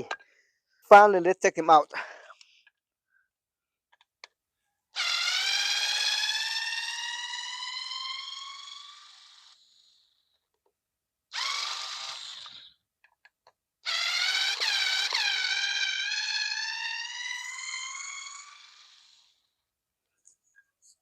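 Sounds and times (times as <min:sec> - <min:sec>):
electric screwdriver motor whining: 0:05.0 - 0:10.2, 0:11.3 - 0:12.8, 0:13.8 - 0:19.5.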